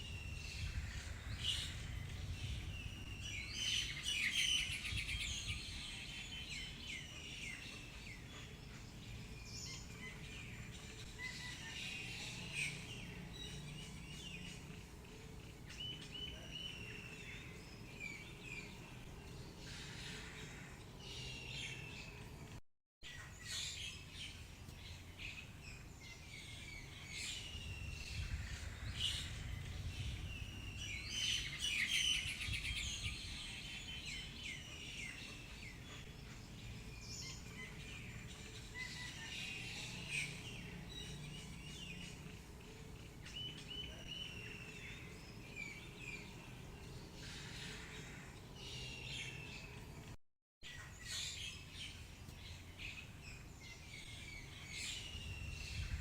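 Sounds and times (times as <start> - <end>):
low wind rumble: 0.0 - 4.0, 26.8 - 31.6, 55.0 - 56.0
wild birds chirping: 0.0 - 56.0.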